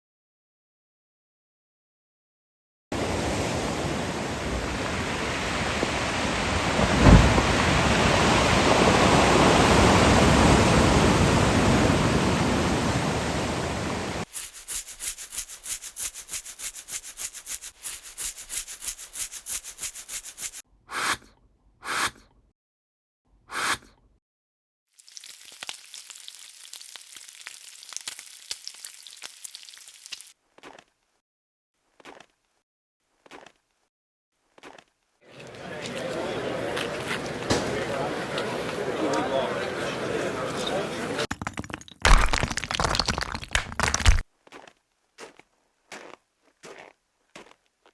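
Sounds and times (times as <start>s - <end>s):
low thud: 6.8s - 7.8s.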